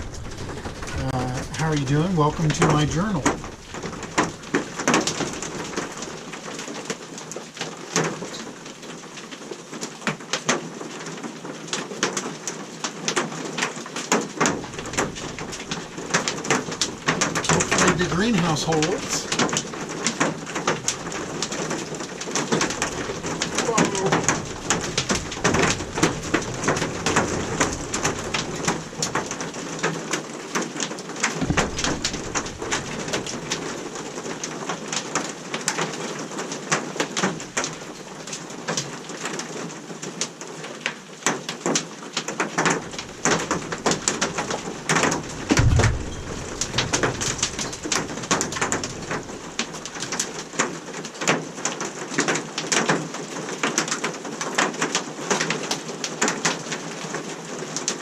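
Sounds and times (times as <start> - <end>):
low thumps: 0.0 - 6.2, 14.6 - 19.6, 20.6 - 29.6, 31.4 - 34.2, 42.8 - 50.4
hail rattling on greenhouse: 0.0 - 58.0
hiss of falling ice and rain: 0.0 - 58.0.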